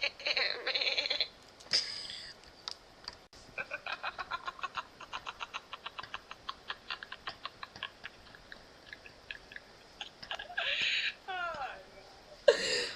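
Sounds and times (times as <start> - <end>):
woman laughing staccato: 3.6 - 11.2.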